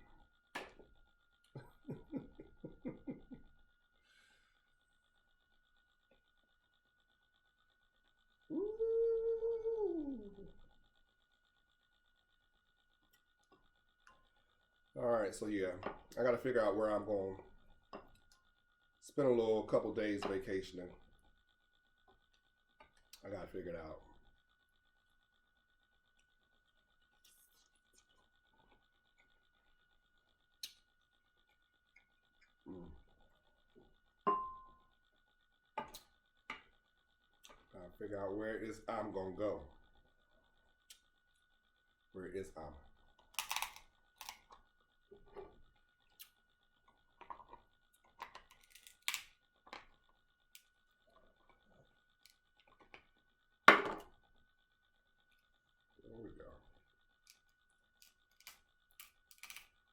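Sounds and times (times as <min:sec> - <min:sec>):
crab shell scratching and clicks: 0:43.2 - 0:44.6, 0:47.3 - 0:49.9, 0:57.3 - 0:59.8.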